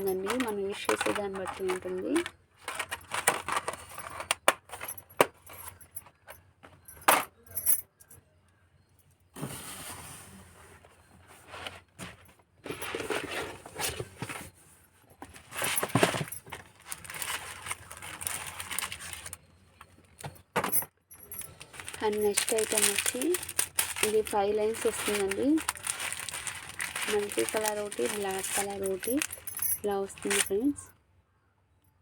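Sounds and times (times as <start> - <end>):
jingling of metal ornaments: 0.0 - 2.2, 20.6 - 30.9
packaging rustling: 0.0 - 4.4, 15.2 - 19.5, 21.3 - 30.8
metallic clinks: 27.1 - 30.5.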